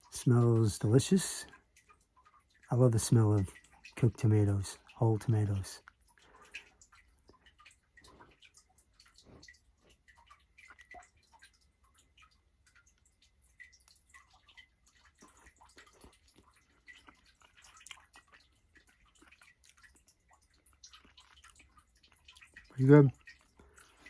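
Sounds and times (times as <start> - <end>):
mouth eating sounds: 14.8 - 24.0.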